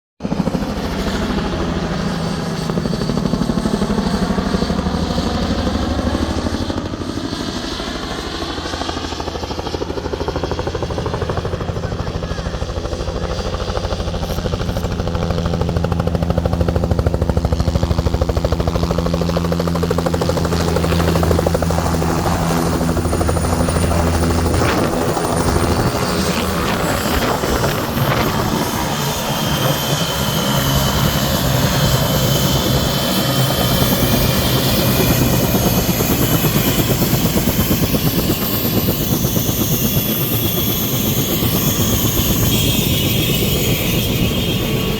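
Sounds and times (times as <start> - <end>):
helicopter rotor beating: 0.2 - 44.9
turboshaft engine whine: 0.2 - 44.9
sweeping phasing tone: 10.0 - 44.9.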